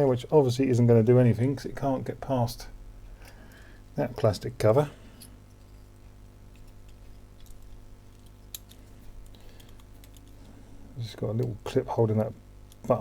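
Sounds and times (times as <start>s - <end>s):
low steady hum: 0.0s - 13.0s
clicks of small plastic parts: 6.6s - 10.4s.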